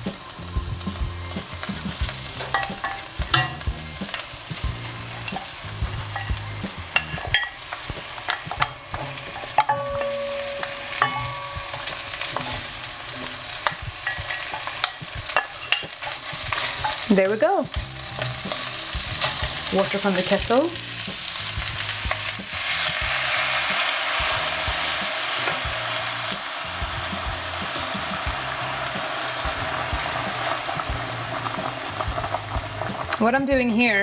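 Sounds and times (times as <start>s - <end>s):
food sizzling in a hot pan: 0.0s - 34.0s
utensil knocking and scraping pan: 1.3s - 4.2s, 5.2s - 17.1s.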